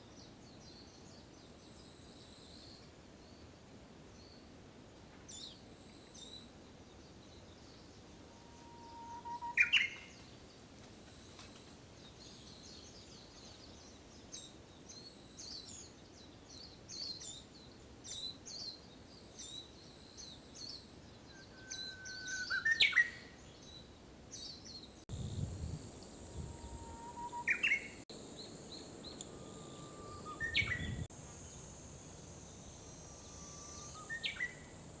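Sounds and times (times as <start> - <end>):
warbler whistling song: 5.3 - 10.3, 12.2 - 34.8
small birds chirping: 8.8 - 35.0
steady high hiss: 25.1 - 35.0.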